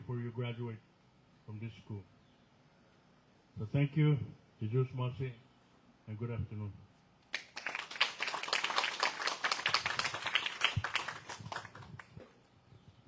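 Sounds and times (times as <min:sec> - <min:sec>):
audience applauding: 0:07.3 - 0:12.2.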